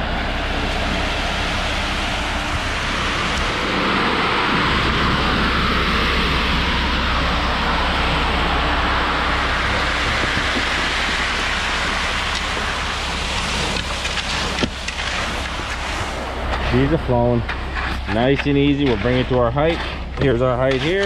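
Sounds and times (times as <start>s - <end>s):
truck engine hum: 0.0s - 21.0s
concrete pouring hiss: 9.4s - 20.9s.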